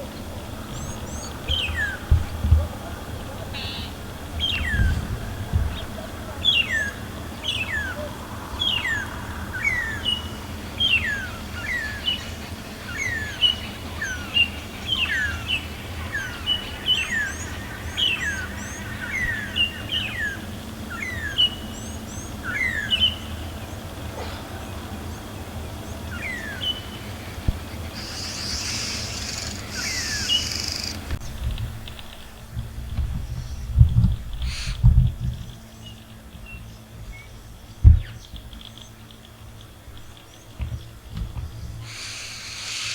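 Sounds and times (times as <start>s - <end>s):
high hissing noise: 27.2s - 31.2s, 41.8s - 42.9s
high bird chirps: 27.7s - 31.1s
bird whistling downward notes: 27.9s - 31.0s.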